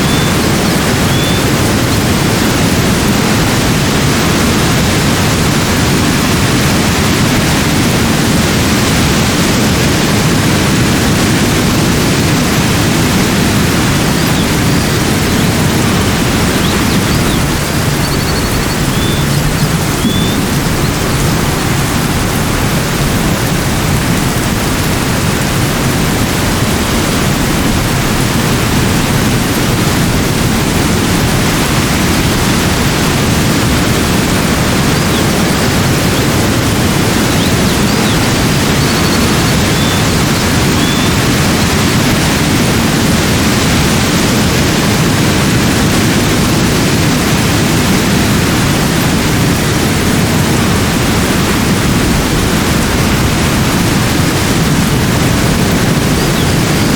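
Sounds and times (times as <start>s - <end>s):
faint high chirps: 0.0s - 1.6s, 14.0s - 21.6s, 37.2s - 41.3s
loud rushing noise: 0.0s - 56.9s.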